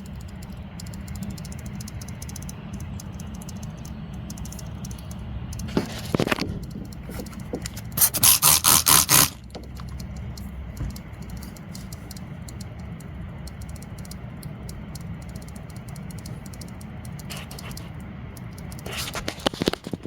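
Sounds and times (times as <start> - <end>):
low background rumble: 0.0 - 20.0
spray bottle squirts: 7.8 - 9.5.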